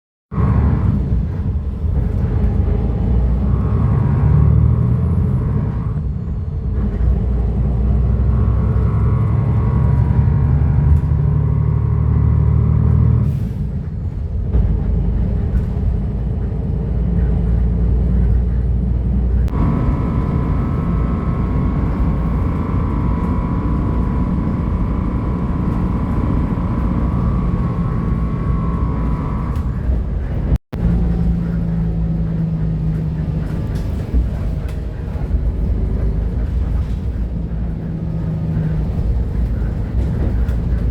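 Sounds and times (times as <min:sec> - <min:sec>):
bus diesel engine running: 0:00.3 - 0:40.9
steady whining tone: 0:19.5 - 0:33.8.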